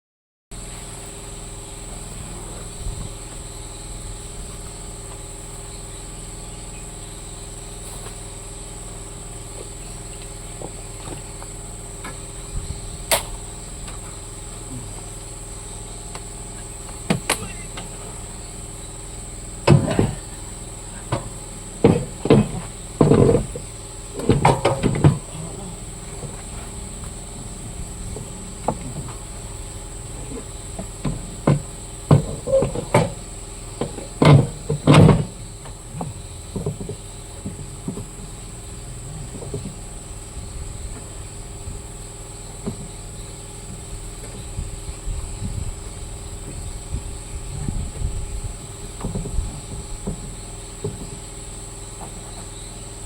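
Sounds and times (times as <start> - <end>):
low hum: 0.6 - 53.0
sharp metallic knocks and clanks: 19.6 - 27.3, 28.2 - 38.2.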